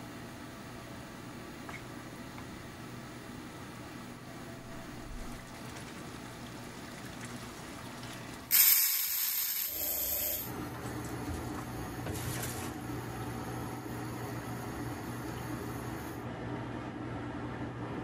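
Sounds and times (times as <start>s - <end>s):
cooking pot hissing: 8.5s - 10.5s.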